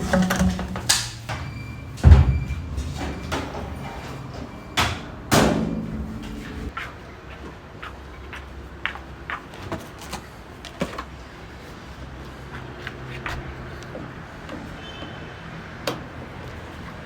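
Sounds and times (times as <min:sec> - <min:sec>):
sharp clicks and knocks: 0:00.0 - 0:01.4.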